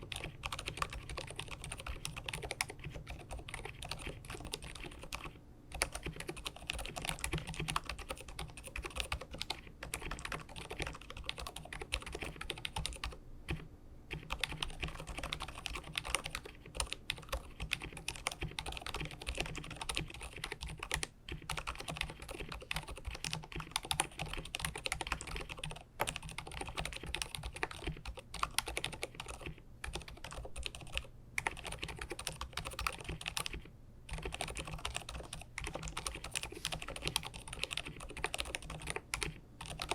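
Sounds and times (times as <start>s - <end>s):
soft mechanical keyboard typing: 0.0s - 39.9s.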